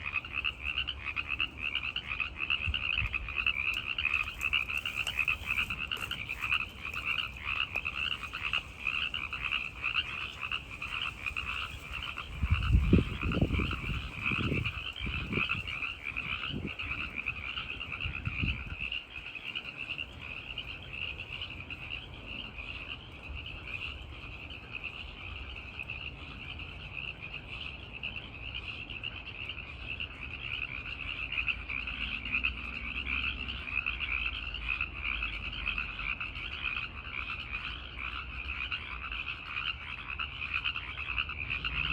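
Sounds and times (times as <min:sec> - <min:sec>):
tree frogs chorus trilling: 0:00.0 - 0:41.9.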